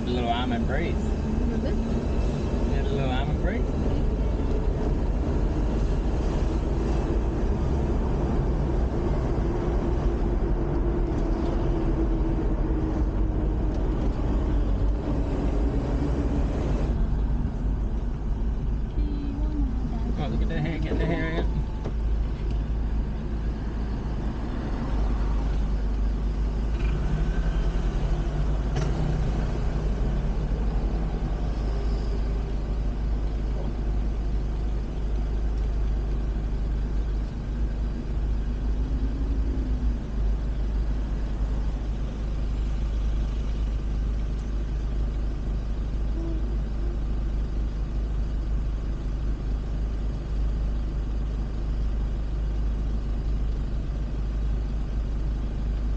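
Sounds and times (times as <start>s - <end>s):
van engine and road rumble: 0.0s - 55.9s.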